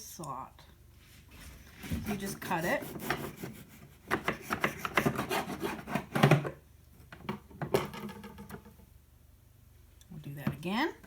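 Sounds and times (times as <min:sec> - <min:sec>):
knife sawing through bread: 0:01.8 - 0:06.1.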